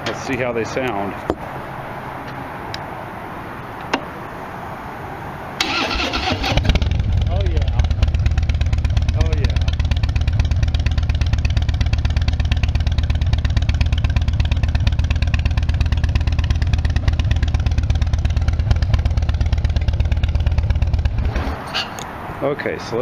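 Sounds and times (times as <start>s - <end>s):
v-twin motorcycle idling: 5.6s - 21.2s.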